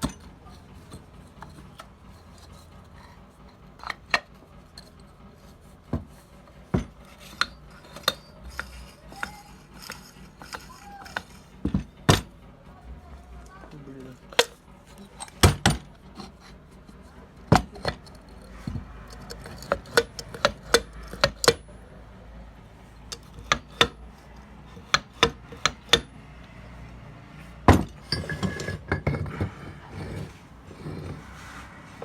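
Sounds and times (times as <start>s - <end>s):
hand tools tapping on metal: 6.7s - 12.3s, 13.4s - 21.7s, 23.0s - 26.6s.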